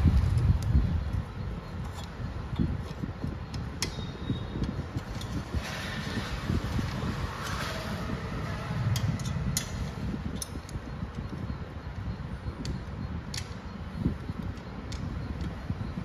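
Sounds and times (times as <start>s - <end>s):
hand tools clicking on nuts: 1.8s - 5.6s, 8.8s - 16.0s
low rumble: 5.4s - 10.8s.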